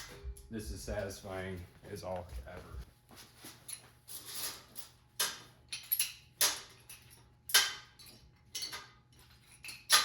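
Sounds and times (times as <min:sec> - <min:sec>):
metal clamps clinking: 0:03.7 - 0:10.0.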